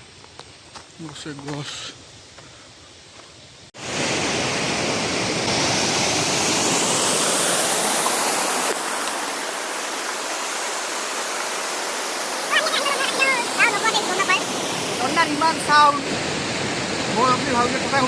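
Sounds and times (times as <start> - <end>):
waterfall rushing: 3.8 - 18.0.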